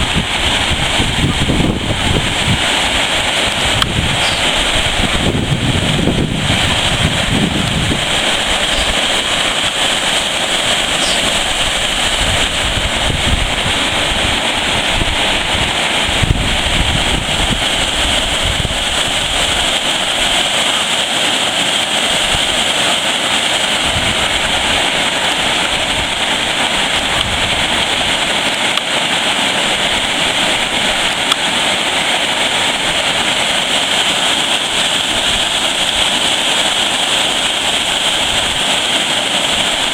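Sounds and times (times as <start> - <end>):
wind buffeting microphone: 0.0 - 20.4, 23.6 - 28.5
waterfall rushing: 0.0 - 39.9.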